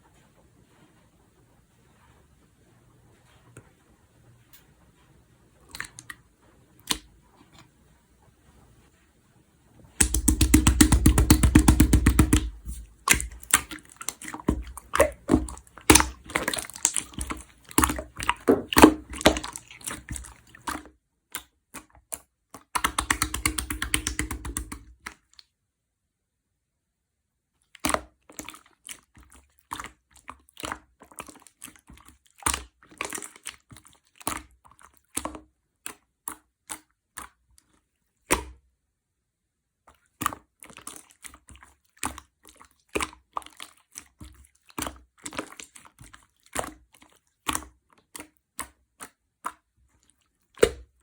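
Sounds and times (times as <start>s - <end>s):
slime popping and clicking: 10.0s - 13.7s, 22.8s - 24.9s.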